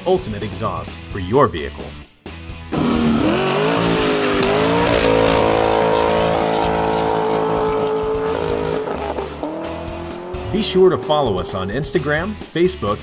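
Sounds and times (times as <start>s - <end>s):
vehicle engine revving: 2.7s - 12.6s.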